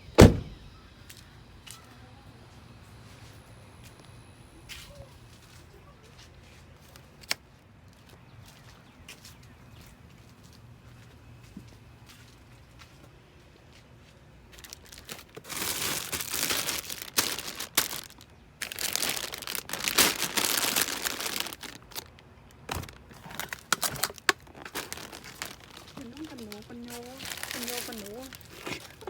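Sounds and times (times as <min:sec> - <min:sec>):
plastic bags rustling: 0:14.5 - 0:29.0.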